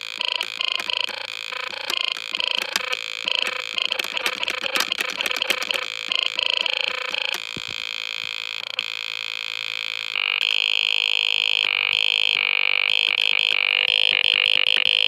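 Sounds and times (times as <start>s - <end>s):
rapid crackling clicks: 0.0s - 7.8s.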